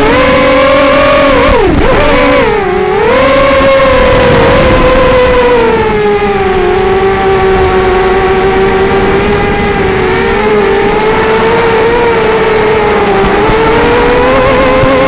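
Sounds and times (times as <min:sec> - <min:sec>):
quadcopter motors whining: 0:00.0 - 0:15.0.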